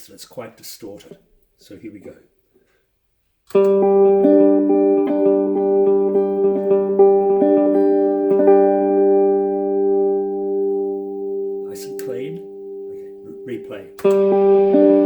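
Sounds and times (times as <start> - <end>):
clean electric guitar notes: 3.5 - 15.0.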